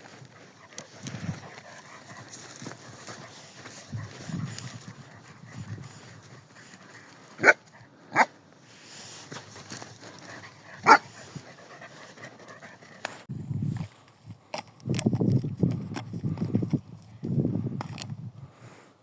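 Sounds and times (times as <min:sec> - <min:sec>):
dog barking: 0:07.4 - 0:08.3, 0:10.8 - 0:11.1.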